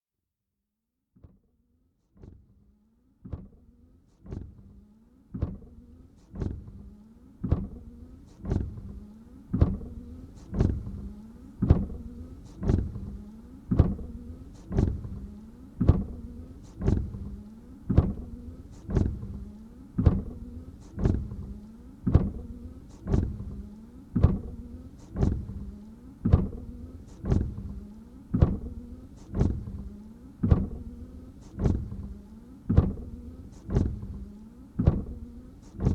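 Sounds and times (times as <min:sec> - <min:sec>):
wiper motor hum: 0:06.3 - 0:35.9
wipers knocking on dry windscreen: 0:09.6 - 0:11.0, 0:11.6 - 0:12.0, 0:16.8 - 0:20.4, 0:25.2 - 0:35.9.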